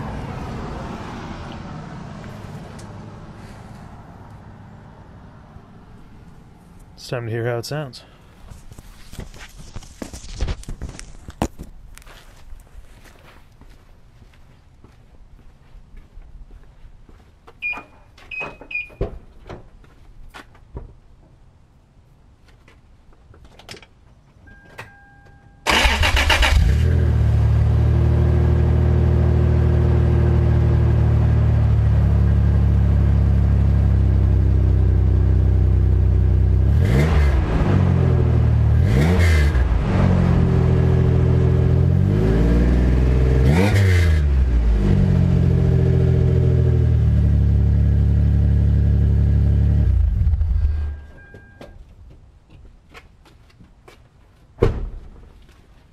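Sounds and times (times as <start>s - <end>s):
short beeps: 17.6s - 19.0s, 24.4s - 25.7s, 50.4s - 51.8s
pickup truck engine idling and revving: 25.9s - 51.0s.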